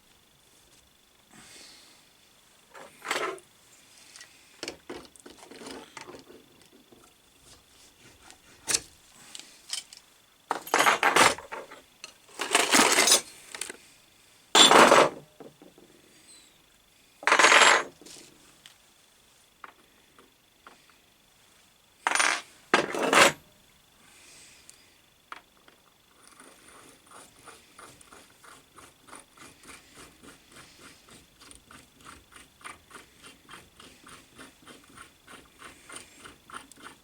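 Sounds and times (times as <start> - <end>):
metal parts clinking: 9.7 - 13.3, 14.6 - 15.1, 17.2 - 17.9, 22.1 - 23.4.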